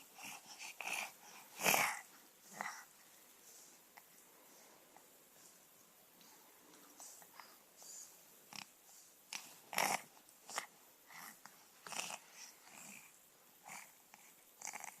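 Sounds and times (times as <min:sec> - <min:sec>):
baby making raspy throat noises: 0:09.3 - 0:13.1.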